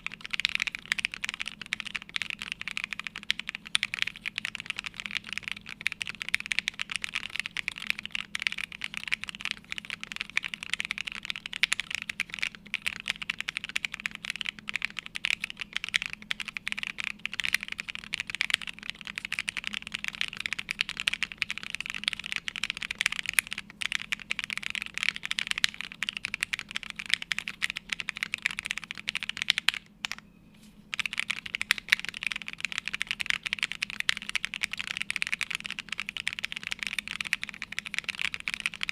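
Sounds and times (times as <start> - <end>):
fast mechanical keyboard typing: 0.0 - 30.2, 30.9 - 38.9.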